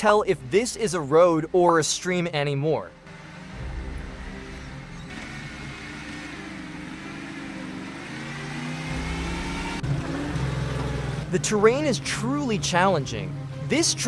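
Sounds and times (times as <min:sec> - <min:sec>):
truck engine under load: 0:02.9 - 0:13.8.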